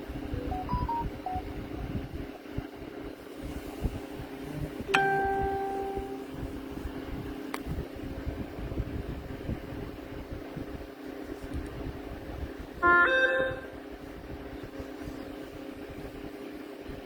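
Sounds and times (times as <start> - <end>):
steady low hum: 0.0 - 17.0
short electronic beeps: 0.4 - 1.5
chime-like tone: 4.9 - 6.3.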